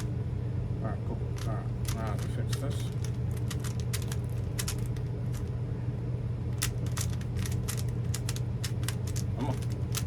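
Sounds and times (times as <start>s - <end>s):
steady low hum: 0.0s - 10.0s
puzzle cube plastic clicks: 1.4s - 5.5s, 6.6s - 10.0s.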